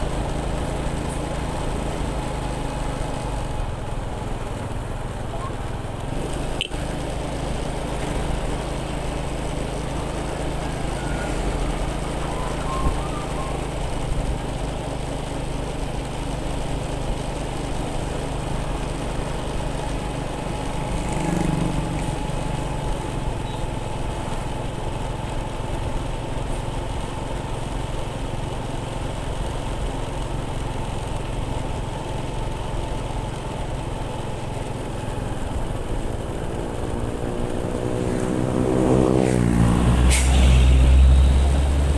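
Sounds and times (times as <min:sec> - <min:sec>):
motorcycle engine running: 0:00.0 - 0:41.9
road and wind noise: 0:00.0 - 0:41.9.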